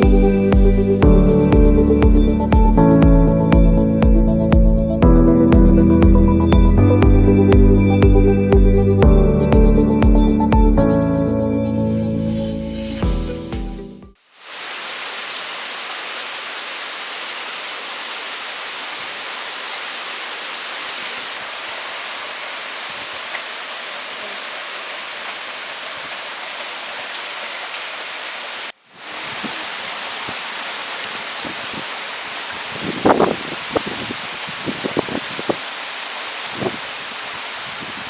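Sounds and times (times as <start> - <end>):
steady rain: 14.2 - 38.0.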